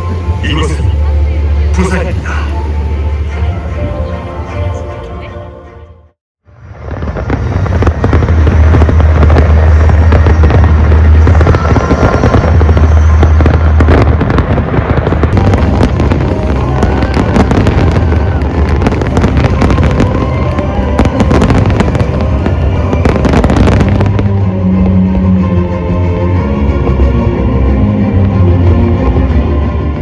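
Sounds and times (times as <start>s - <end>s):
fireworks crackling and popping: 6.6s - 26.1s.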